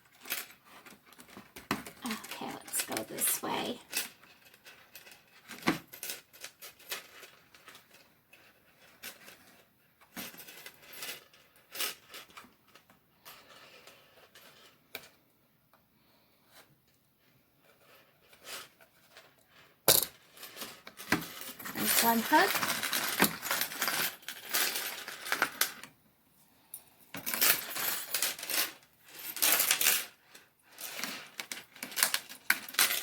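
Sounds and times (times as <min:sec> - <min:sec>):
metal chain clinking: 0:19.9 - 0:25.7, 0:26.8 - 0:30.1.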